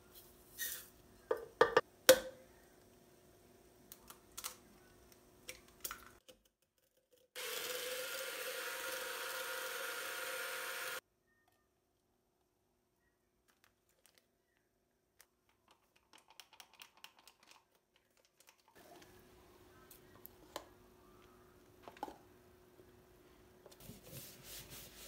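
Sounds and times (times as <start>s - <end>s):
kitchen appliance motor running: 7.4s - 11.0s.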